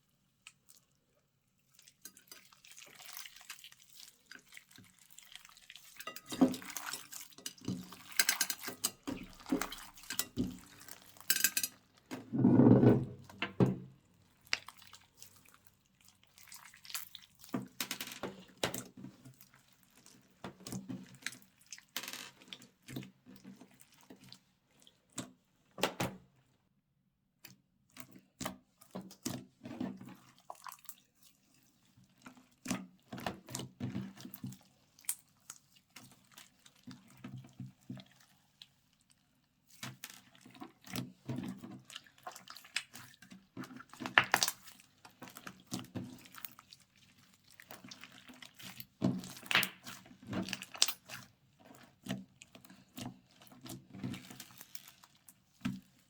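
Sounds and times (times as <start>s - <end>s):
slime squelching: 14.4s - 17.6s, 39.6s - 56.0s.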